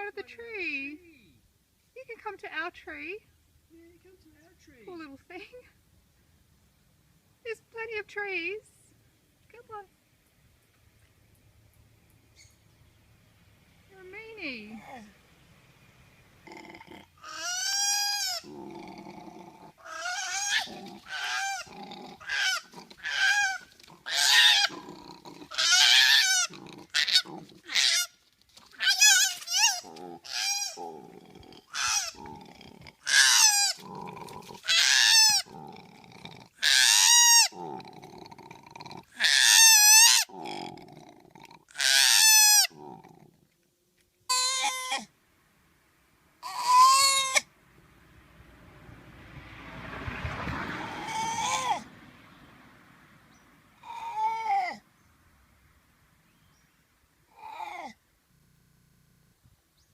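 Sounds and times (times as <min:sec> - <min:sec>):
koala grunting: 0:16.4 - 0:28.1, 0:28.8 - 0:39.4, 0:40.1 - 0:43.6, 0:57.3 - 0:58.0
koala squealing cries: 0:17.2 - 0:18.5, 0:19.8 - 0:24.8, 0:25.5 - 0:28.1, 0:28.8 - 0:30.8, 0:31.7 - 0:32.2, 0:33.1 - 0:33.8, 0:34.7 - 0:35.5, 0:36.6 - 0:37.6, 0:39.2 - 0:40.3, 0:41.8 - 0:42.8, 0:44.3 - 0:45.1, 0:46.4 - 0:47.5, 0:50.8 - 0:51.9, 0:53.8 - 0:54.8.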